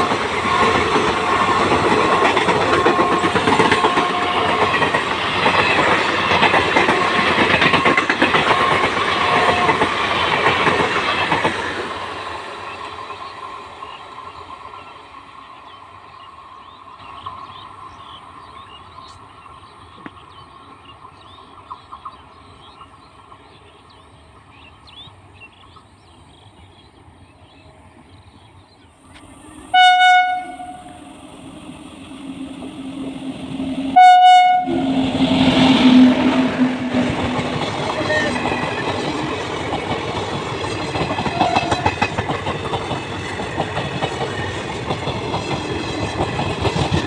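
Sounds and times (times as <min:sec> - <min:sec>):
train rumble: 0:00.0 - 0:47.0
locomotive horn blasts: 0:29.7 - 0:31.1, 0:33.9 - 0:37.0.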